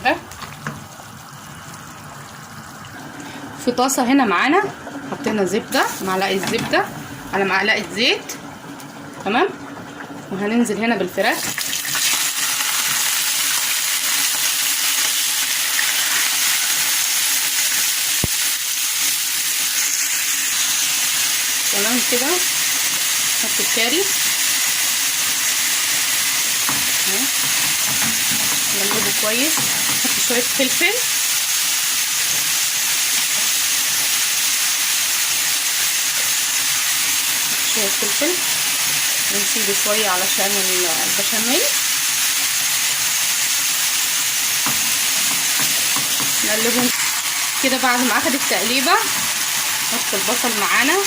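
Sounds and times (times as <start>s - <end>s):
chicken sizzling in a pan: 11.4s - 51.0s.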